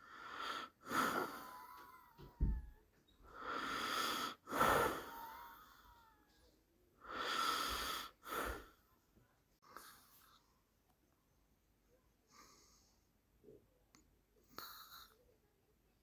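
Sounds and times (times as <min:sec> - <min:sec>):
wheezy snoring breaths: 0:00.0 - 0:02.2, 0:03.2 - 0:06.0, 0:07.0 - 0:08.8, 0:14.5 - 0:15.2.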